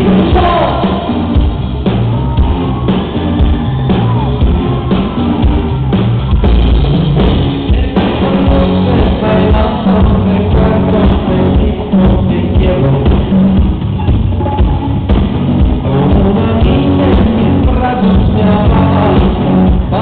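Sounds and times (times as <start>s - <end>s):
live pop band playing: 0.0s - 20.0s
person singing: 7.5s - 20.0s.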